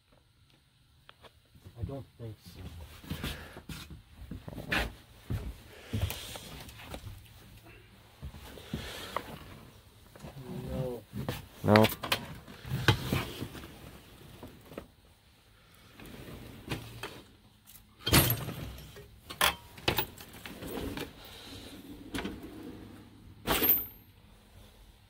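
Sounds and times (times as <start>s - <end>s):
quiet rustling and handling: 0.0s - 25.0s
tools clattering and knocking: 16.9s - 21.1s, 23.4s - 24.1s.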